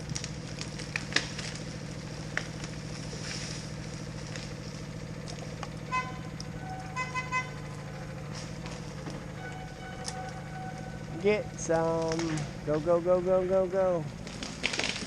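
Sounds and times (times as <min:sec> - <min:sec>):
engine droning: 0:00.0 - 0:15.0
signal whistle toots: 0:05.9 - 0:07.6, 0:09.3 - 0:11.2.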